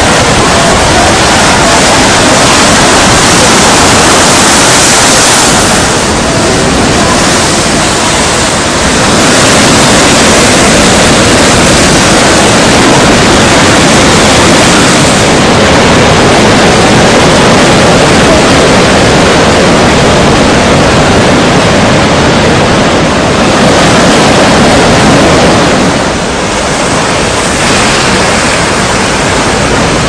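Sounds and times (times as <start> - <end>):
waves on a beach: 0.0 - 30.0
wind buffeting microphone: 0.0 - 30.0.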